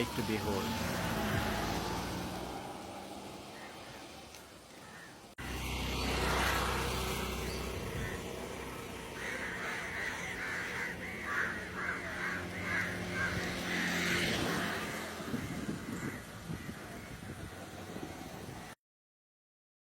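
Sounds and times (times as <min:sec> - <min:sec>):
busy road traffic rumble: 0:00.0 - 0:18.8
crow cawing: 0:07.8 - 0:17.2.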